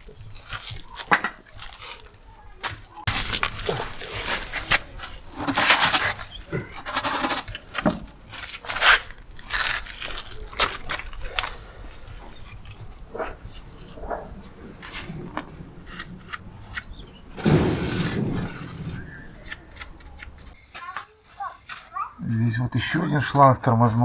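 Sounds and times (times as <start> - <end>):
scraping: 0.0 - 20.6
metal tools clattering: 9.8 - 20.6.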